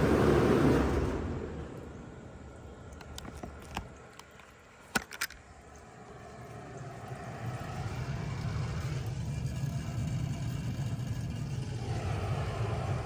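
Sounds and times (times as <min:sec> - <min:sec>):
heat pump motors humming: 0:00.0 - 0:13.0.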